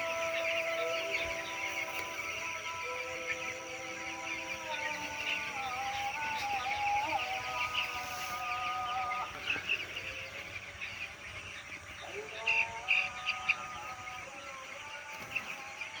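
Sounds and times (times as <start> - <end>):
background music: 0.0 - 10.6
chicks peeping: 0.0 - 16.0.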